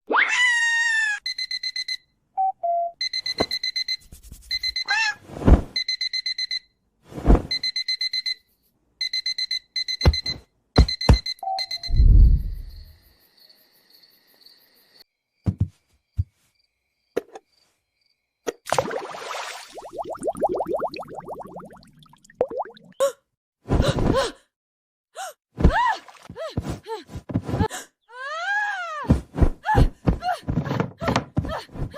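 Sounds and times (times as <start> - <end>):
alarm clock beeping: 1.2 - 2.0, 3.0 - 5.0, 5.8 - 6.7, 7.5 - 8.4, 9.0 - 12.2
cartoon thumps and sliding: 5.3 - 5.8, 7.1 - 7.6, 11.9 - 12.7
low rumble: 11.9 - 12.8
knocks: 15.5 - 15.8.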